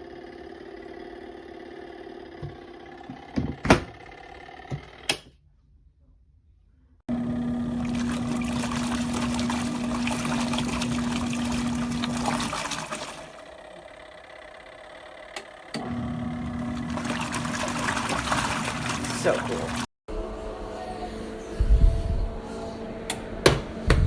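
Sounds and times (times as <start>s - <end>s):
washing machine motor hum: 0.0s - 5.2s, 7.1s - 19.9s
water rushing: 7.1s - 13.5s, 15.9s - 19.9s.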